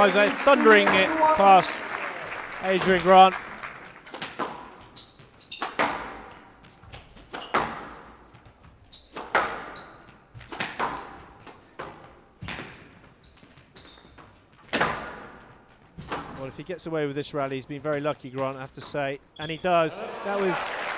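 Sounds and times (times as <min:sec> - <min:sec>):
shoes squeaking on court floor: 0:04.8 - 0:11.8, 0:12.4 - 0:16.6, 0:18.8 - 0:19.9.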